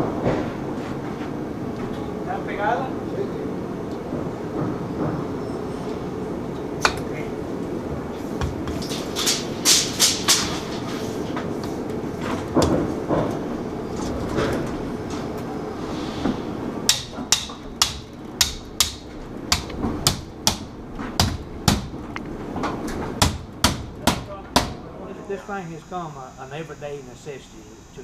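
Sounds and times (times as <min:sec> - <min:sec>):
sheet metal knocks and clatter: 0:08.4 - 0:11.0.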